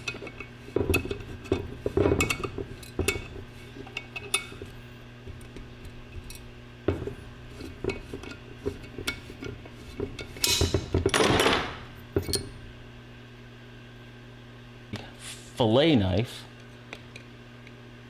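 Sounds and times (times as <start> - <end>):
metal engine parts clinking: 0.0 - 4.8, 7.6 - 12.6.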